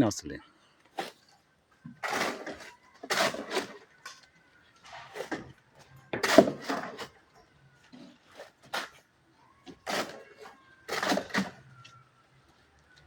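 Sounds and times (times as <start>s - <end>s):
hand tools scraping: 1.0s - 4.2s, 4.8s - 7.2s, 7.9s - 9.1s, 9.7s - 11.7s.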